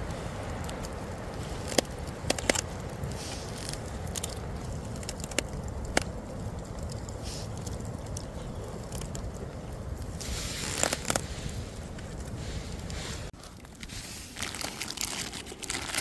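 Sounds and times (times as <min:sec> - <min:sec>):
campfire crackling: 0:00.0 - 0:16.0
fire hiss: 0:03.0 - 0:04.6, 0:07.1 - 0:07.7, 0:10.1 - 0:14.4.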